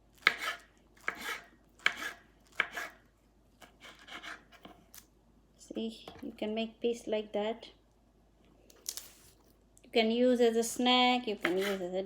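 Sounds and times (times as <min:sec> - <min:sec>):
knife cutting soft food: 0:00.1 - 0:03.0, 0:03.6 - 0:05.0, 0:11.4 - 0:11.9.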